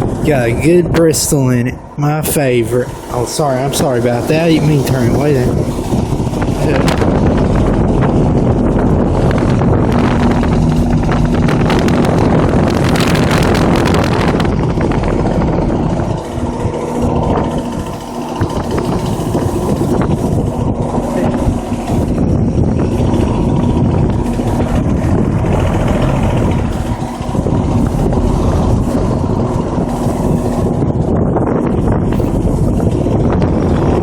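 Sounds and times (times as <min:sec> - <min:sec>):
compressor hum: 0:00.0 - 0:34.0
outdoor fan whooshing: 0:00.0 - 0:34.0.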